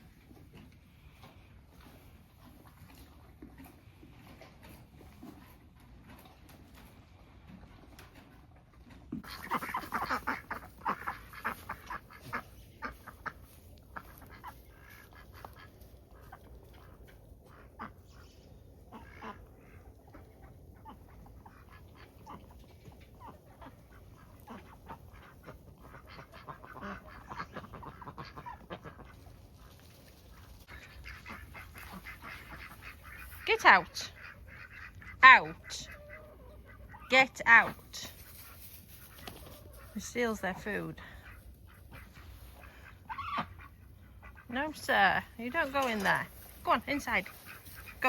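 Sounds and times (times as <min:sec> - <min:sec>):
waterfowl calling: 0:09.2 - 0:37.1, 0:41.0 - 0:48.0.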